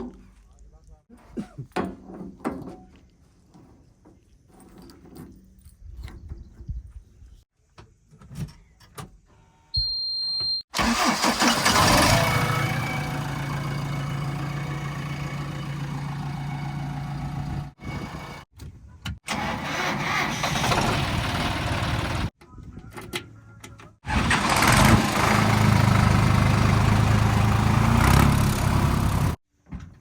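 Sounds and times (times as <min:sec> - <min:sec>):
diesel engine running: 0:10.8 - 0:18.4, 0:19.3 - 0:22.3, 0:24.1 - 0:29.4.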